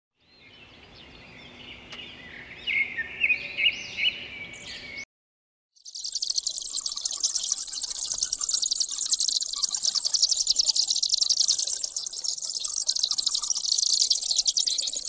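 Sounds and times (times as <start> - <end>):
bird singing: 0.2 - 5.1, 5.8 - 15.0
high-pitched hiss: 5.8 - 15.0.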